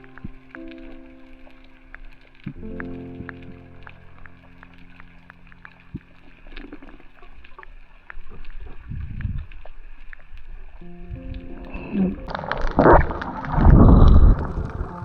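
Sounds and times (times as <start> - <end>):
background music: 0.0 - 6.6, 10.8 - 15.0
crackling clicks: 0.0 - 15.0
low water sloshing rumbles: 0.0 - 15.0.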